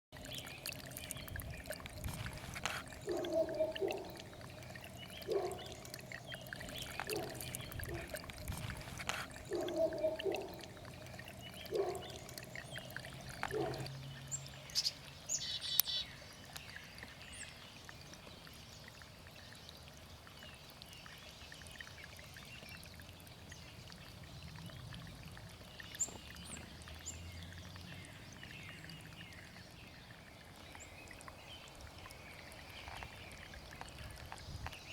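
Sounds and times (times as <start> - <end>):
spring water trickling: 0.1 - 34.9
short low gurgles: 0.2 - 14.6.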